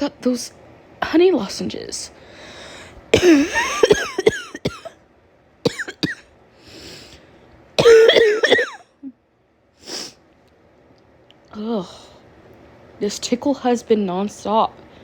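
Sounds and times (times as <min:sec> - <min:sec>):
breathing: 0:02.2 - 0:03.0, 0:06.6 - 0:07.5
woman coughing: 0:03.2 - 0:04.9, 0:05.7 - 0:06.2, 0:07.8 - 0:09.1.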